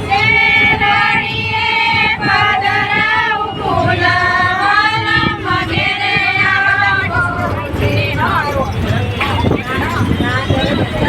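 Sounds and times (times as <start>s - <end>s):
high singing voice: 0.0s - 11.0s.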